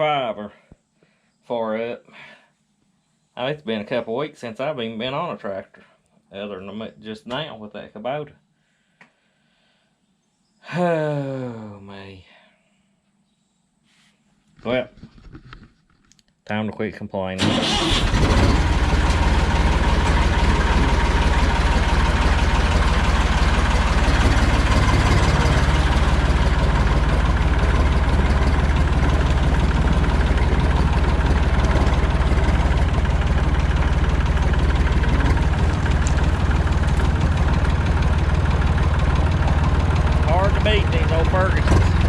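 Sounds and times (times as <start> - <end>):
tractor engine running: 17.4 - 42.0.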